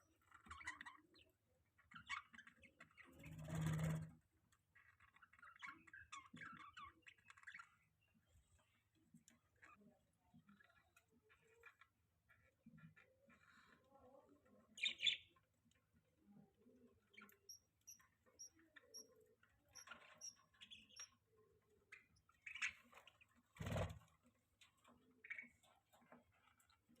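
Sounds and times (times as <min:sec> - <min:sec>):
budgerigar chirping: 0:14.8 - 0:15.3.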